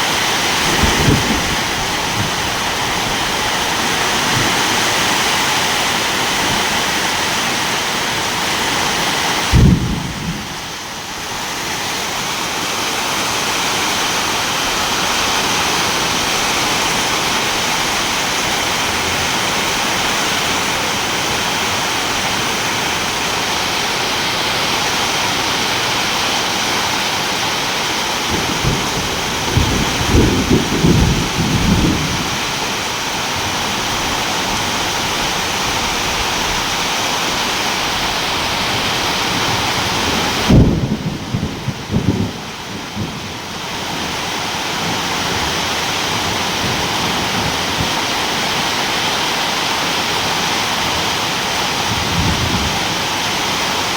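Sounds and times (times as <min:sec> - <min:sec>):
heavy rain: 0:00.0 - 0:53.9
thunder clap and rumbling: 0:00.2 - 0:05.4, 0:09.4 - 0:10.9, 0:28.0 - 0:32.6, 0:38.2 - 0:48.4, 0:51.9 - 0:53.6.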